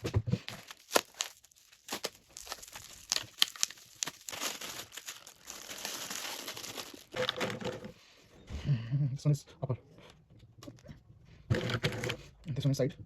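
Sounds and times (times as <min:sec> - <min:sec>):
plastic packaging crinkling: 0:00.4 - 0:07.9.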